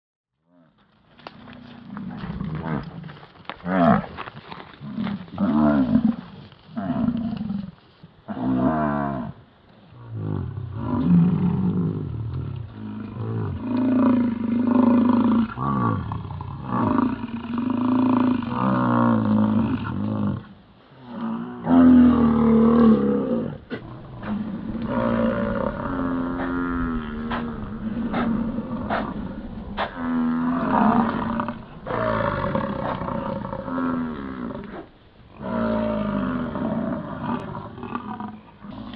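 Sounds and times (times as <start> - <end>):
bison bellowing: 21.3 - 38.9.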